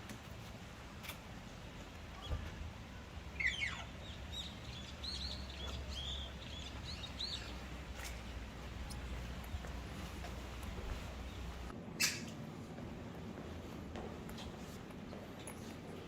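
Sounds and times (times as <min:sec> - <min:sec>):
low steady rumble: 0:02.7 - 0:14.0
small birds chirping: 0:03.2 - 0:12.4.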